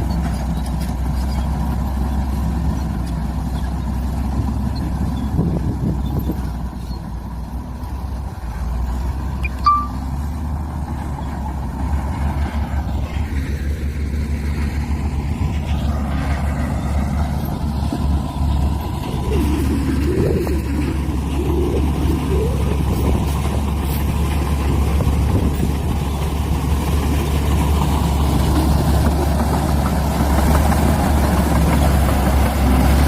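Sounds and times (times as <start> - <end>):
heavy diesel machinery rumbling: 0.0 - 33.0
sharp squeak: 9.4 - 10.1.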